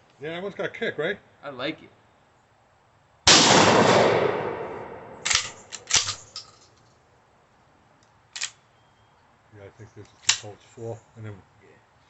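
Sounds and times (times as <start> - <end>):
shotgun shot ringing out: 3.3 - 6.2
sharp clicks: 5.2 - 6.9, 8.0 - 8.6, 10.0 - 10.5.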